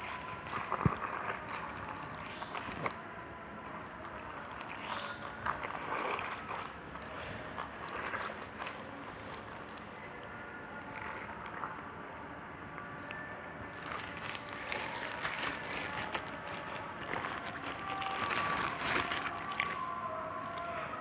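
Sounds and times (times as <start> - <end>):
slime squelching: 13.8 - 19.8.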